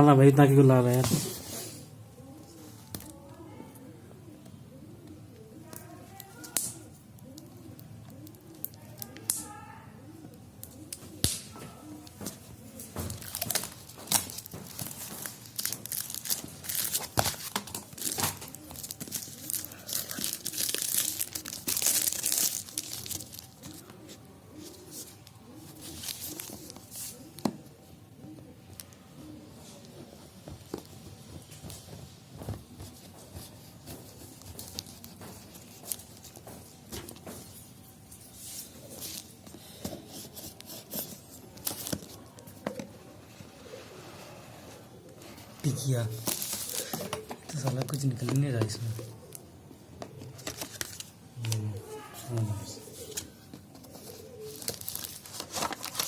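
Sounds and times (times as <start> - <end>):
tape and plastic wrap ripping: 13.1 - 23.8, 54.5 - 56.0.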